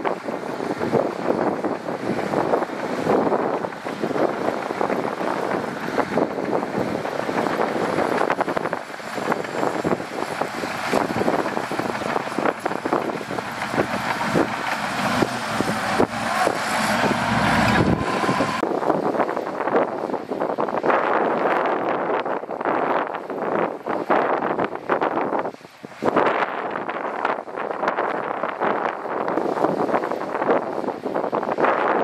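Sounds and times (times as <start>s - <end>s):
machinery rattling and clanking: 0.0s - 18.6s
deep engine rumble: 0.0s - 18.8s.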